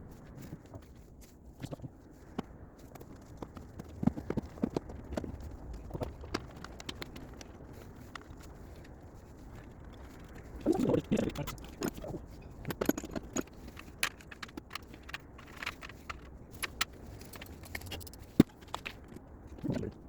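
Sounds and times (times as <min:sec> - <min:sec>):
metal tools clicking and clinking: 0:11.0 - 0:19.2.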